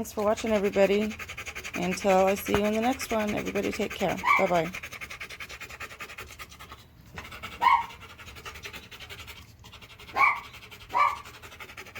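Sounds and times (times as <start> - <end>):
dog panting fast: 0.0 - 11.9
dog whimpering: 3.4 - 4.7, 7.5 - 8.0, 10.1 - 11.2.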